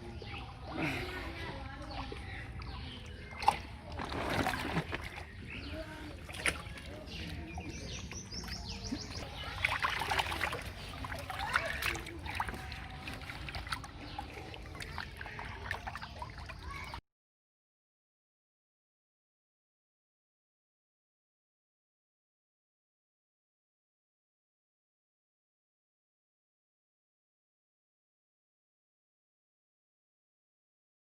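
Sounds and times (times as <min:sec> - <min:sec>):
water splashing and sloshing: 0:00.0 - 0:17.0.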